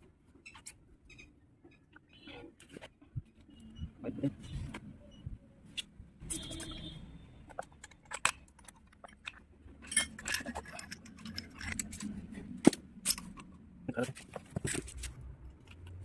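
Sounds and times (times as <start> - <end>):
metal tools clinking: 7.6 - 12.3, 13.0 - 13.5.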